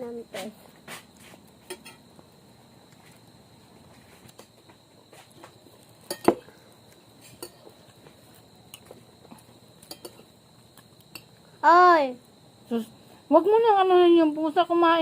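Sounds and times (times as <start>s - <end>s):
cutlery clinking on a plate: 1.7s - 2.0s, 6.0s - 6.5s, 7.2s - 7.7s, 9.8s - 10.3s.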